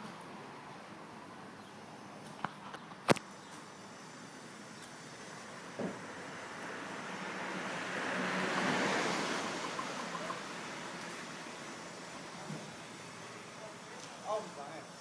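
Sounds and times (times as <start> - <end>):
vehicle passing: 5.2 - 15.0.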